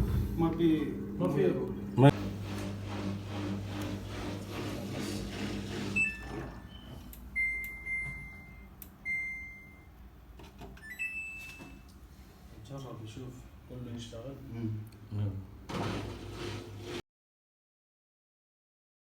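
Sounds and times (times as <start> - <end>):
washing machine electric hum: 0.0 - 17.0.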